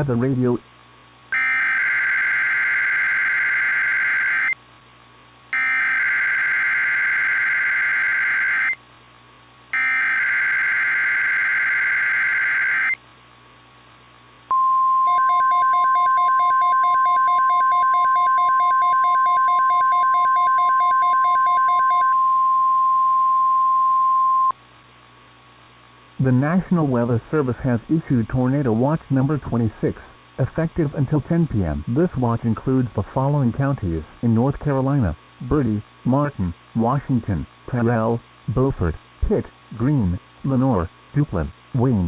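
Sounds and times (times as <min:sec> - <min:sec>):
steady warning alarm tone: 0:01.3 - 0:04.6, 0:05.6 - 0:08.8, 0:09.8 - 0:13.0, 0:15.1 - 0:22.2
screechy digital data bursts: 0:01.4 - 0:04.6
rapid pulsing electronic beep: 0:15.1 - 0:22.2.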